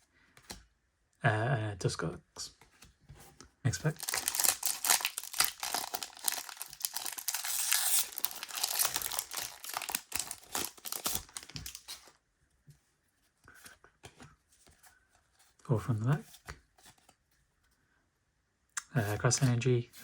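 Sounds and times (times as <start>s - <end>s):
foil wrapper tearing and crinkling: 3.8s - 12.1s.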